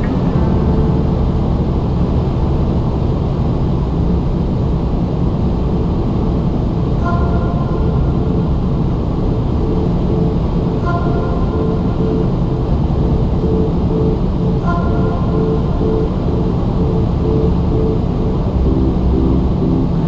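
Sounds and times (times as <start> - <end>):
car engine and tyre rumble: 0.0 - 6.8.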